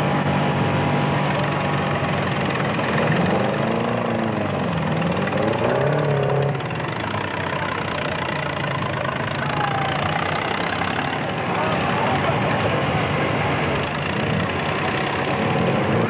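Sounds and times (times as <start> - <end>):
car engines idling: 0.0 - 16.0
engine revving: 0.0 - 16.0.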